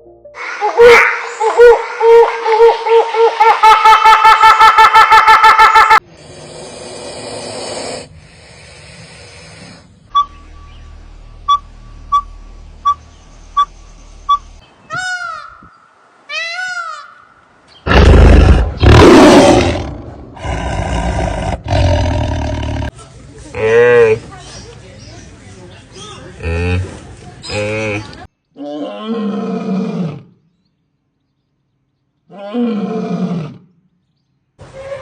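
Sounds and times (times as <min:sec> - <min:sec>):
rising and falling animal calls: 0:00.4 - 0:06.0
roar-like animal calls: 0:17.8 - 0:22.9.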